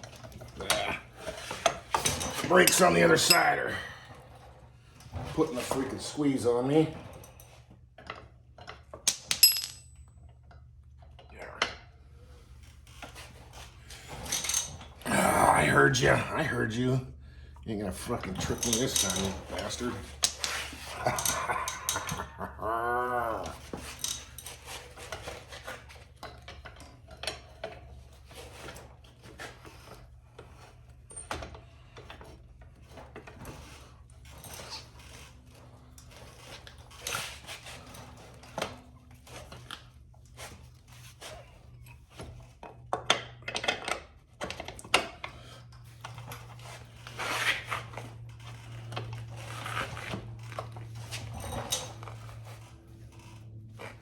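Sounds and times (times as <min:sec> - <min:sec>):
metallic tool clinks and knocks: 0:09.1 - 0:10.2.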